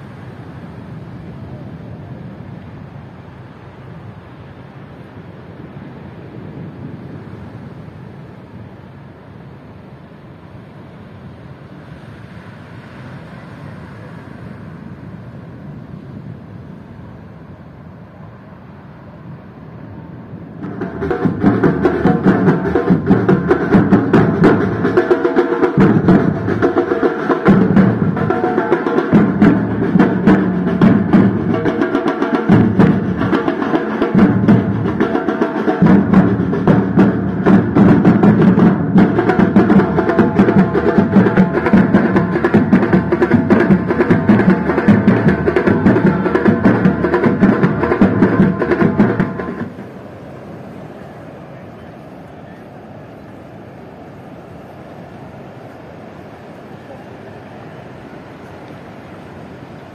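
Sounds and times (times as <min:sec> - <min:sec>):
fast drumming percussion music: 0:20.6 - 0:49.7.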